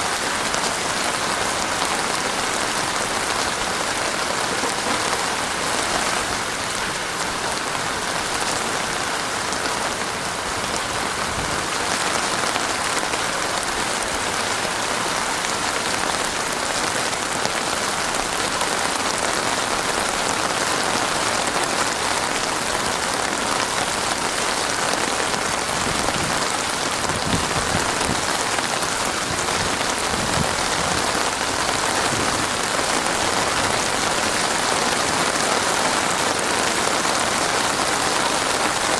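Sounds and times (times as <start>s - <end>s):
heavy rain pattering: 0.0s - 38.9s.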